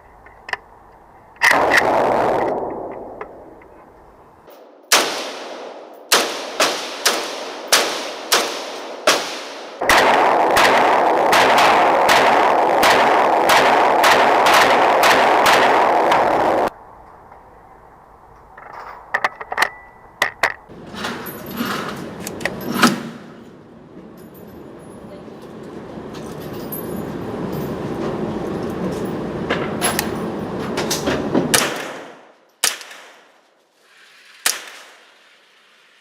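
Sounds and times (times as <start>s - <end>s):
gunshots: 1.4s - 3.7s, 4.8s - 16.7s, 31.5s - 33.3s
rush of noise: 9.8s - 18.3s.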